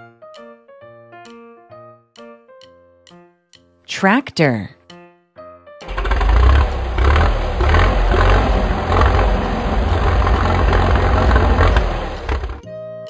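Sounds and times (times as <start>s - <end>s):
tractor engine running: 5.8s - 12.6s.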